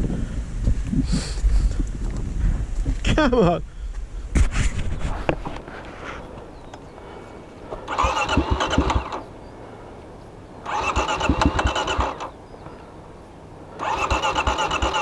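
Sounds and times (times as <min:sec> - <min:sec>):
car engine cranking: 0:07.8 - 0:09.3, 0:10.6 - 0:12.4, 0:13.8 - 0:15.0.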